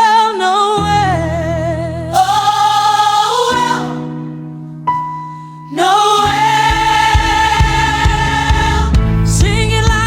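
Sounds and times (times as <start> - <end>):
keyboard chords: 0.8 - 10.0
person singing: 2.1 - 4.1
drums: 6.3 - 10.0.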